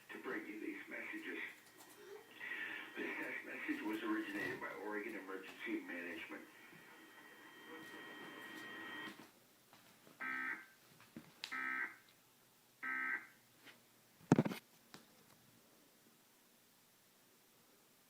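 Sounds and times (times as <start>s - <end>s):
digital data tone bursts: 1.0s - 4.4s, 5.7s - 9.1s.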